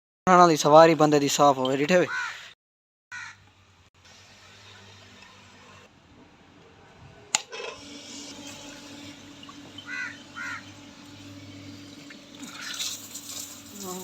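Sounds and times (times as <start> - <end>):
crow cawing: 2.1 - 3.4, 9.8 - 10.8
water running: 11.7 - 14.0.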